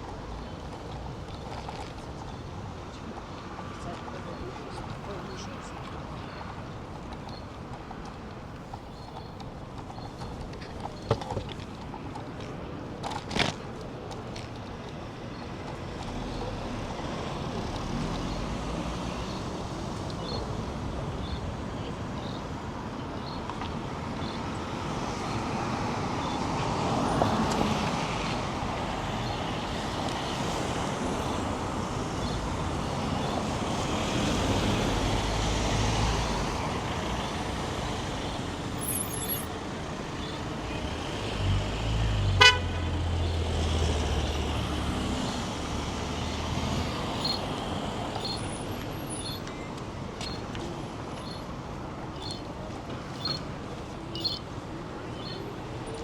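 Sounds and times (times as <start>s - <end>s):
vehicles passing: 0.0s - 56.0s
car horn toot: 42.4s - 42.9s.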